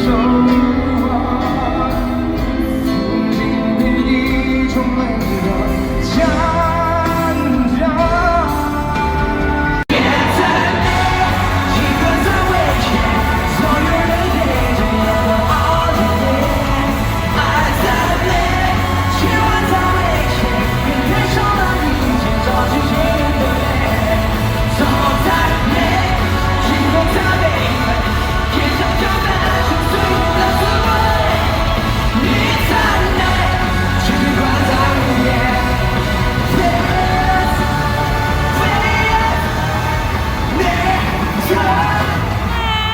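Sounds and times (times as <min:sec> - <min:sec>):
live rock band playing: 0:00.0 - 0:42.9
man singing: 0:00.0 - 0:42.9
crowd yelling: 0:09.0 - 0:42.9.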